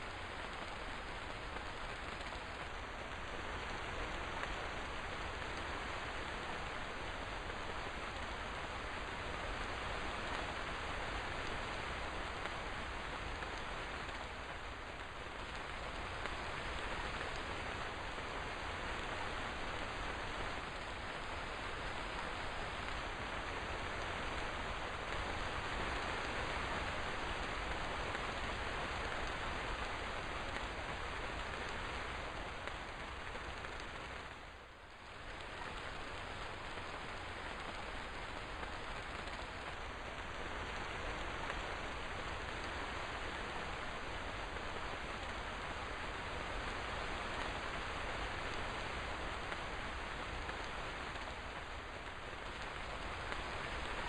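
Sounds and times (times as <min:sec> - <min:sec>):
steady rain hiss: 0:00.0 - 0:54.0.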